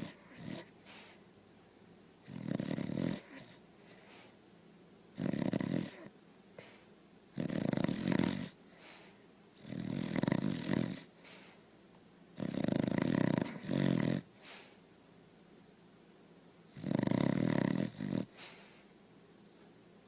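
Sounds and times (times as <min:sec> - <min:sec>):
dog snoring: 0:00.0 - 0:01.2, 0:02.2 - 0:04.3, 0:05.1 - 0:11.6, 0:12.4 - 0:14.7, 0:16.7 - 0:18.8.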